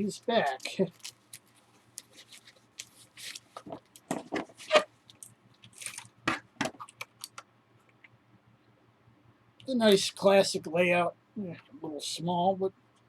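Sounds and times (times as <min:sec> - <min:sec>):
packaging rustling and crinkling: 0:00.4 - 0:07.4.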